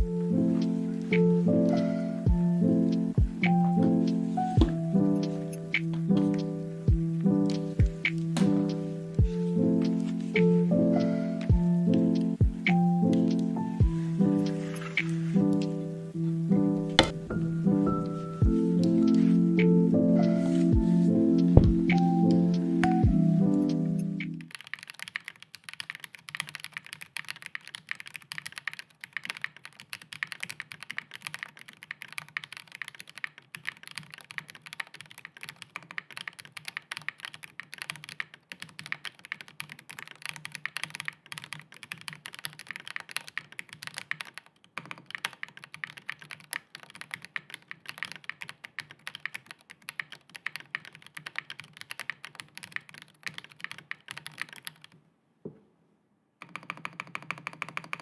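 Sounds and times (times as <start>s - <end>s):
mechanical keyboard typing: 24.2s - 55.0s, 56.4s - 58.0s.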